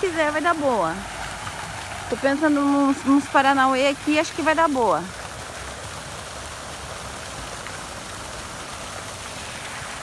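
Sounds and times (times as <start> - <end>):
fountain water splashing: 0.0 - 10.0.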